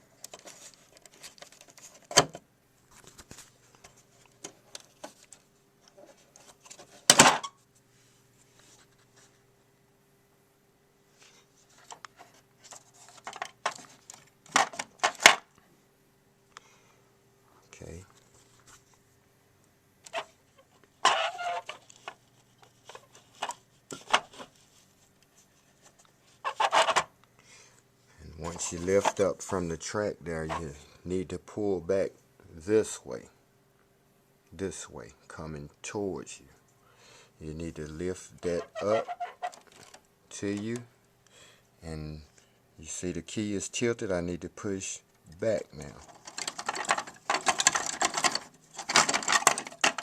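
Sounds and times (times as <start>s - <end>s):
plastic keys rattling: 46.0s - 50.0s.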